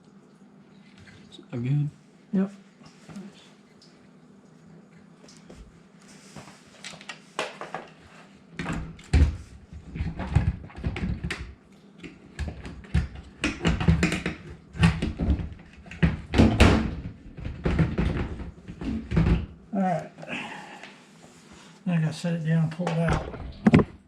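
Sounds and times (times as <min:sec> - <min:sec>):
dishwasher parts knocking and rattling: 0:12.4 - 0:19.5.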